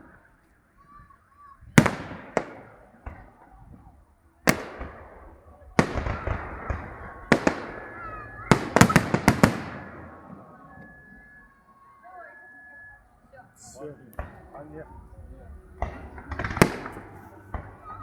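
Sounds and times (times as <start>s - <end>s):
fireworks shells bursting: 4.5s - 11.4s, 13.6s - 18.0s.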